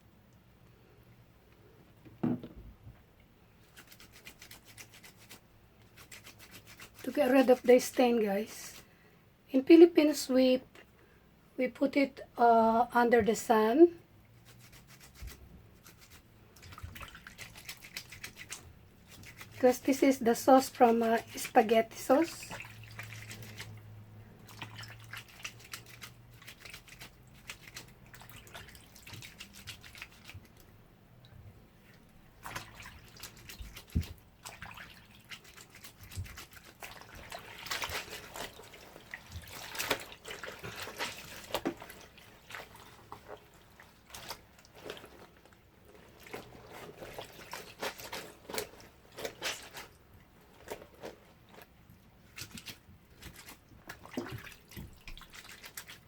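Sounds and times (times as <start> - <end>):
water splashing in a basin: 14.4 - 56.0.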